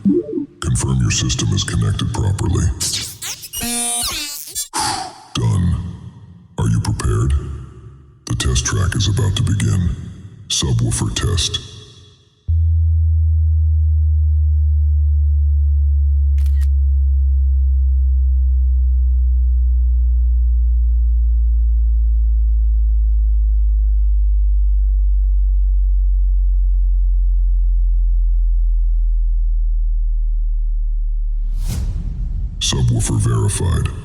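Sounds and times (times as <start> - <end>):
deep bass sine tone falling: 12.5 - 34.0.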